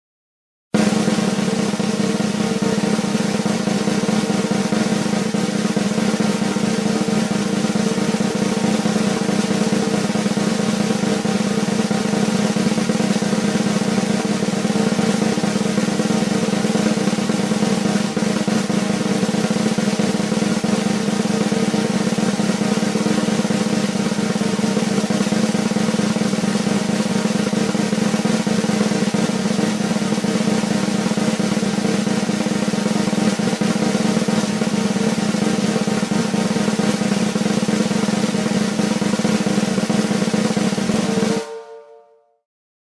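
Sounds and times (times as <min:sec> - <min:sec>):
suspense drum roll: 0:00.8 - 0:42.0.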